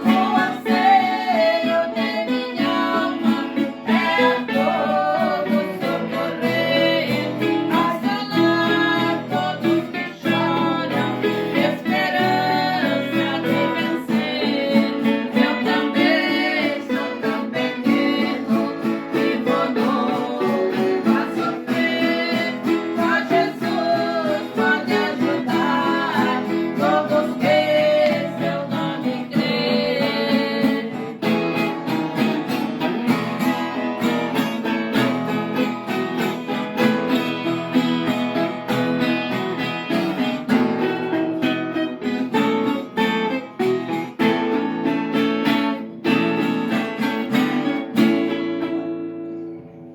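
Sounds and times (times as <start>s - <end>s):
person singing praise song: 0.0s - 31.3s
strummed acoustic guitar: 0.0s - 49.9s.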